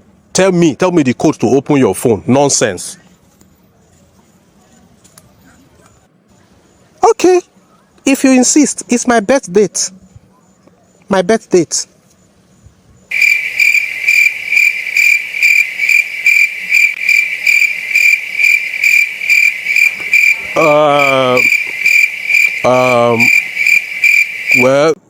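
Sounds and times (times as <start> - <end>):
cricket chirping: 12.6 - 25.0
short steady-pitched vocal sound: 20.3 - 21.6.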